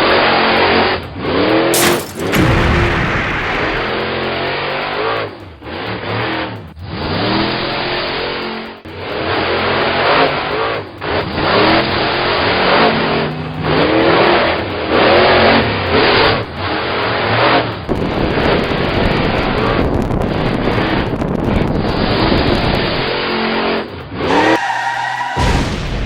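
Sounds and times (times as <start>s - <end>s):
vehicle engine revving: 11.1s - 18.6s.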